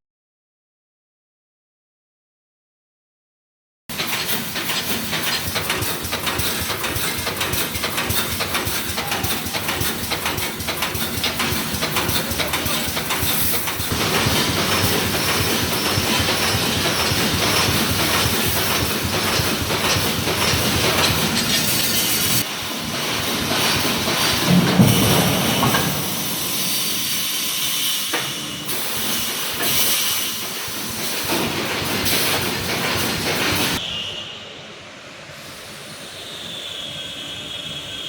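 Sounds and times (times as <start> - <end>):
welding machine clatter: 3.9 - 33.8.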